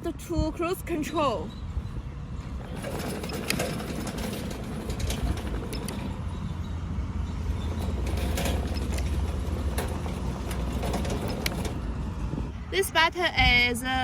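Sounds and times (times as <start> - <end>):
lawn mower engine running: 2.4 - 12.0.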